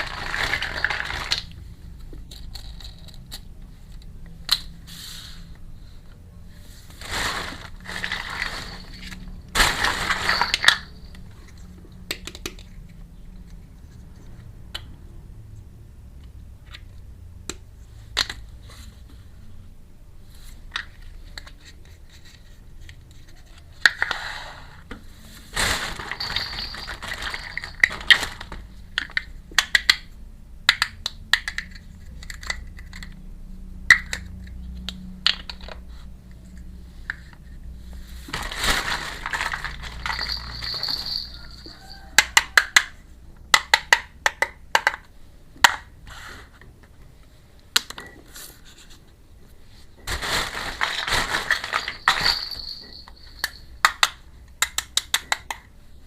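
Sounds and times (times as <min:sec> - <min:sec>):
packaging rustling: 0:00.0 - 0:01.6, 0:06.8 - 0:11.2, 0:25.4 - 0:28.7, 0:38.3 - 0:41.6, 0:50.0 - 0:53.5
toy kitchen pieces clicking: 0:00.0 - 0:04.7, 0:09.9 - 0:13.0, 0:26.0 - 0:33.2, 0:42.1 - 0:45.9, 0:50.8 - 0:55.8.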